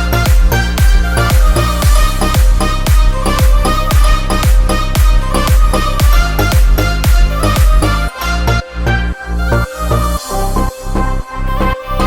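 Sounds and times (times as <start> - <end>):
kick drum: 0.0 - 8.0.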